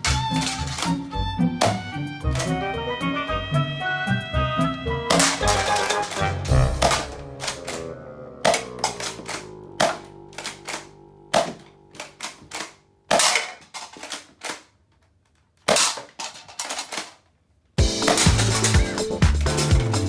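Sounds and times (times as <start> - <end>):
toy blaster clacks and pops: 0.0 - 2.6, 5.1 - 14.7, 15.6 - 17.2
loud toy blaster shots: 5.1 - 14.6, 15.7 - 17.1.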